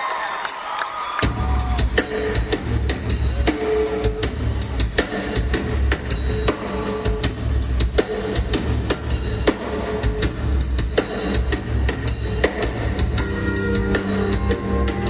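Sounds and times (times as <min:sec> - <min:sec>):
crowd cheering: 0:00.0 - 0:02.4, 0:13.4 - 0:15.0
live rock band playing: 0:00.3 - 0:15.0.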